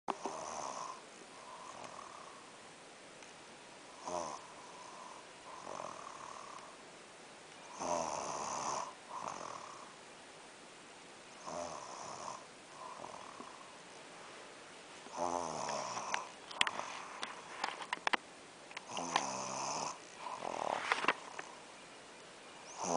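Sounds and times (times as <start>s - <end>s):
person snoring: 0.1s - 2.4s, 4.0s - 6.7s, 7.7s - 10.0s, 11.4s - 13.7s, 15.1s - 17.2s, 18.9s - 21.5s.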